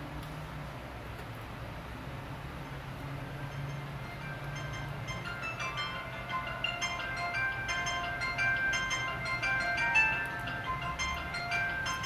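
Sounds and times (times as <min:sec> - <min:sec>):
steady low hum: 0:00.0 - 0:12.0
high bell-like notes: 0:03.4 - 0:12.0
background music: 0:03.6 - 0:12.0.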